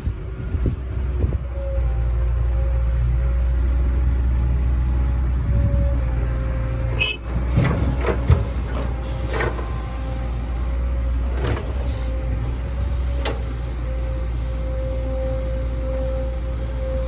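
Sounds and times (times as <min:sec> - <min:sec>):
heavy diesel machinery drone: 0:00.0 - 0:17.0
metallic clanks and knocks: 0:06.9 - 0:10.0.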